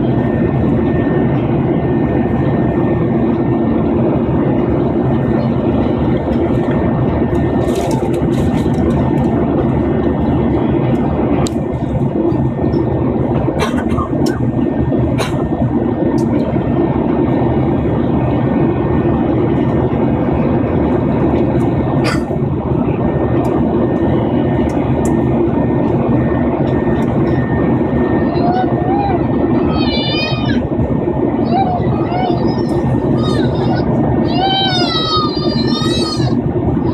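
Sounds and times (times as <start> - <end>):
jet engines roaring in cabin: 0.0 - 36.9.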